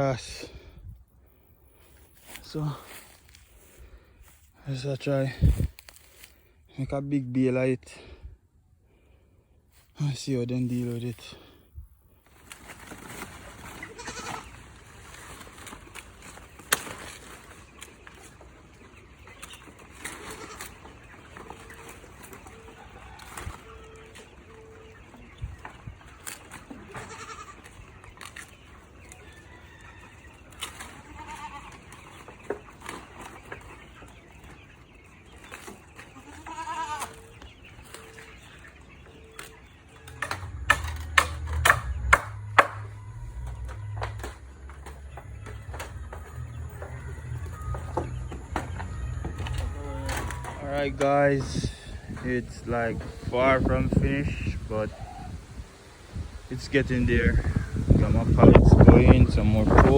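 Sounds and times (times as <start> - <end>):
goats bleating: 13.7 - 14.6, 20.0 - 20.8, 26.8 - 27.7, 30.9 - 31.9, 36.2 - 37.2.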